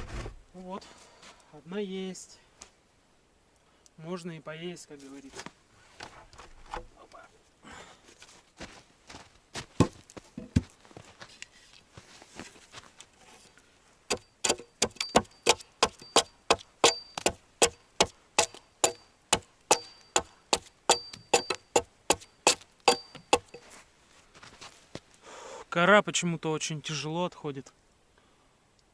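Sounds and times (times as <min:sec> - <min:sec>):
tool striking wood: 0:14.1 - 0:23.6.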